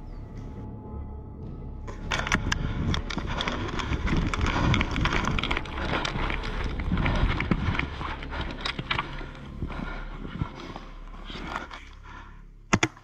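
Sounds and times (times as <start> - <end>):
twigs cracking: 1.9 - 13.0
footsteps on dry leaves: 2.1 - 11.7.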